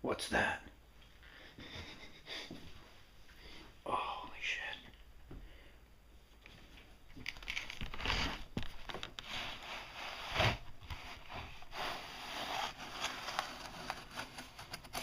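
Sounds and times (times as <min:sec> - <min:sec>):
rustling and crinkling: 0:06.3 - 0:15.0.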